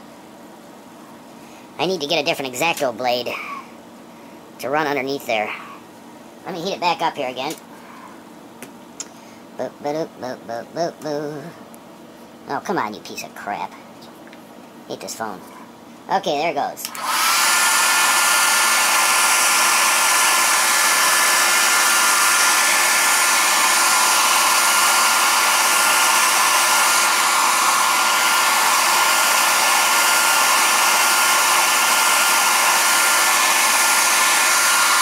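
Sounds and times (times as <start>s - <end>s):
hot-air blower hissing: 16.8s - 35.0s.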